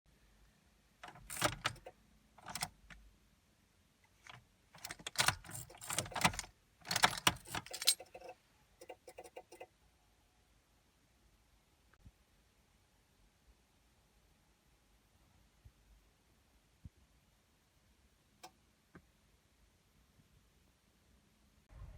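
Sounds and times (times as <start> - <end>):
car keys jangling: 1.0 - 2.7, 4.2 - 9.6
rapid clicking from car: 1.0 - 2.7, 4.3 - 9.7.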